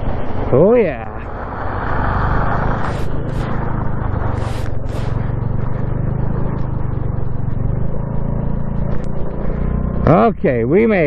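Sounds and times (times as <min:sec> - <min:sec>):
small motorbike engine running: 0:01.7 - 0:11.0
short hissing rushes: 0:02.0 - 0:05.3.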